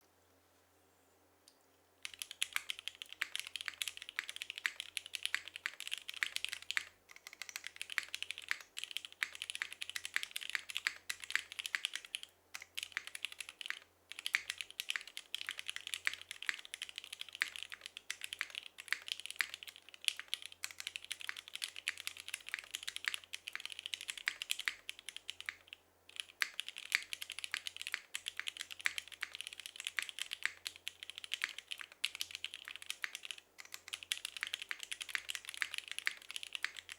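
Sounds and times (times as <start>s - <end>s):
fast mechanical keyboard typing: 2.0s - 36.9s.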